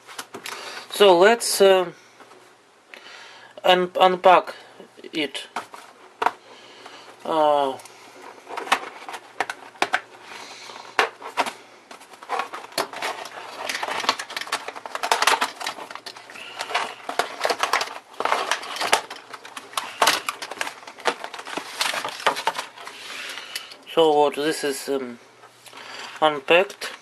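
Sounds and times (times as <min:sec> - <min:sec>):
packaging crinkling and rustling: 0:05.4 - 0:23.9.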